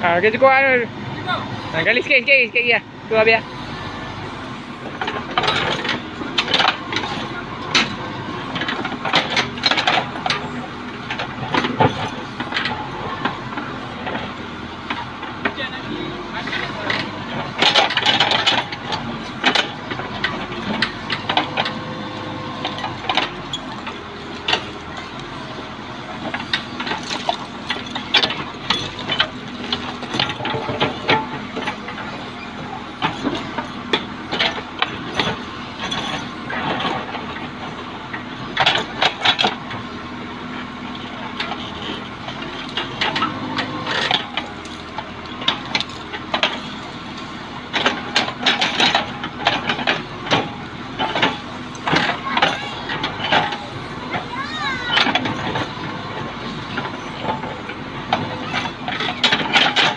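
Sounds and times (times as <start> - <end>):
diesel engine running: 0.0 - 59.9
digging clanks and knocks: 4.8 - 59.9.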